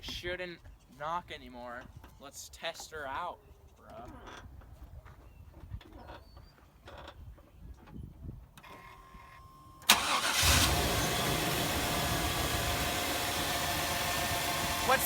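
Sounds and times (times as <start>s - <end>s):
truck engine starting and idling: 9.8s - 15.0s.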